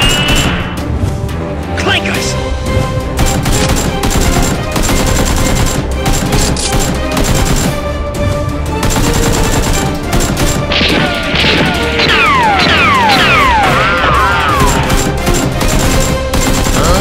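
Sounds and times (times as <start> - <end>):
action background music: 0.0 - 17.0
rapid automatic gunfire: 3.2 - 7.8, 8.8 - 13.6, 14.2 - 17.0.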